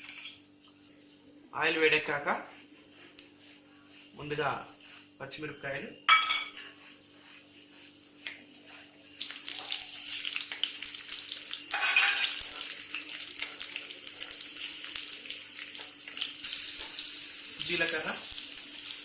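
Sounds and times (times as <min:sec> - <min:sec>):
chillies sizzling in hot oil: 0:08.0 - 0:19.0.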